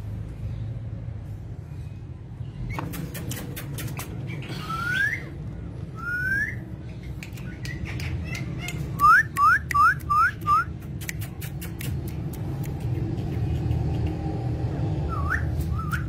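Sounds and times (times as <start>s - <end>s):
sharp clicks: 2.8s - 4.2s, 7.2s - 14.3s
parrot whistling: 4.4s - 5.4s, 6.0s - 6.7s, 15.1s - 16.0s.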